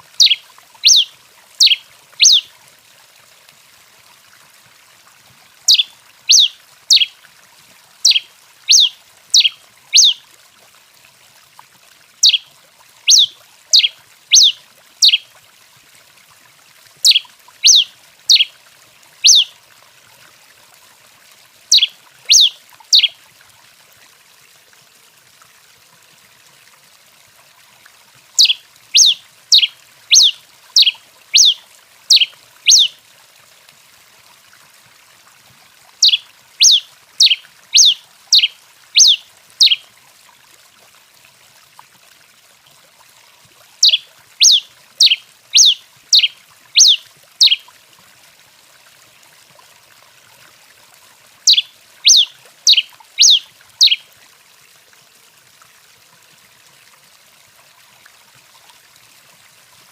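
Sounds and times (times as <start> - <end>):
finch singing: 0.2 - 2.4, 5.7 - 7.1, 8.0 - 10.2, 12.2 - 12.4, 13.1 - 15.2, 17.0 - 18.5, 19.2 - 19.5, 21.7 - 23.1, 28.4 - 32.9, 36.0 - 39.8, 43.8 - 47.6, 51.5 - 54.0.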